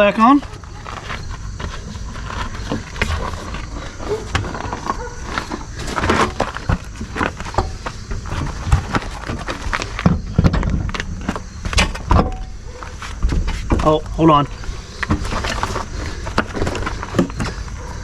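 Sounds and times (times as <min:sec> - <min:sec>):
tools and parts clattering: 0:15.0 - 0:17.5.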